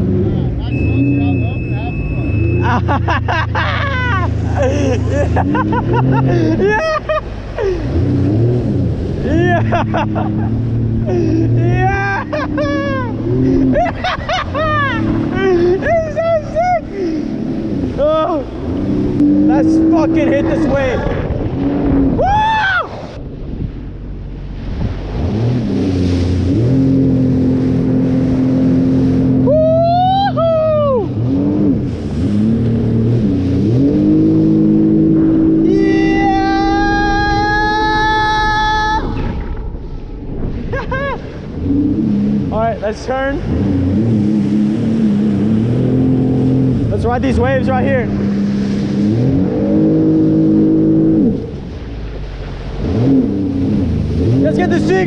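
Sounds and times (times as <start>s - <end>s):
wind and water rush: 0.0s - 55.0s
jet ski engine throttling up: 0.3s - 16.2s, 30.4s - 55.0s.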